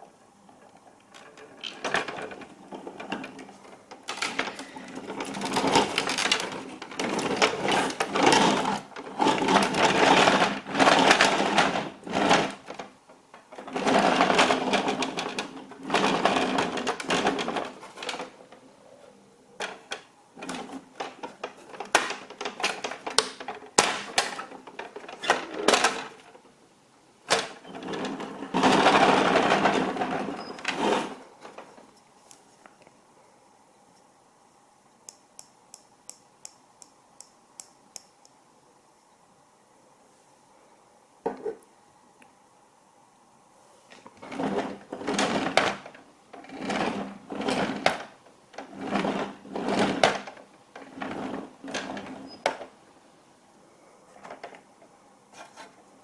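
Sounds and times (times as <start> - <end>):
plastic toy truck rattling: 1.0 - 18.6, 19.6 - 26.4, 27.3 - 31.7, 44.2 - 52.7.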